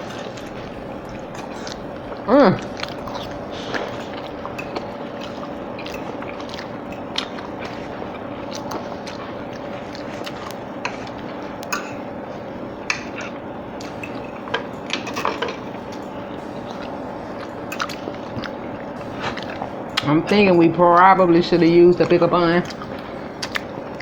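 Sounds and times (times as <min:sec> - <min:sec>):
wet chewing: 0:00.0 - 0:21.1, 0:22.0 - 0:24.0
faint background hum: 0:00.0 - 0:24.0
mouth clicks and smacks: 0:22.6 - 0:24.0.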